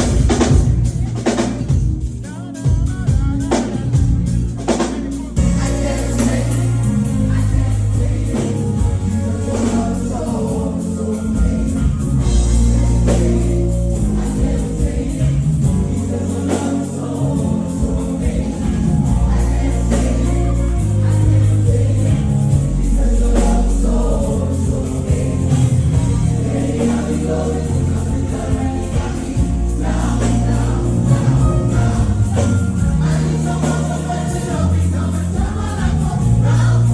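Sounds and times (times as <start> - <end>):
bass and drums: 0.0 - 36.9
choir singing gospel: 0.0 - 36.9.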